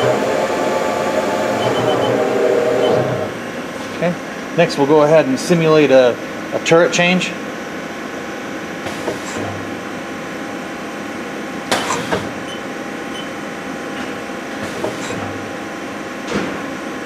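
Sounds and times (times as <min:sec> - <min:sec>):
loud noisy bursts: 0:00.0 - 0:03.5
lathe turret whirring: 0:00.0 - 0:04.6
machine hum: 0:00.0 - 0:06.6.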